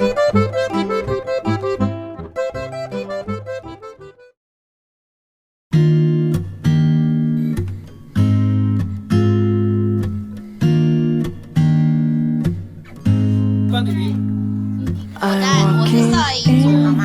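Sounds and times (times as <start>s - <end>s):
strummed acoustic guitar: 13.7s - 17.0s.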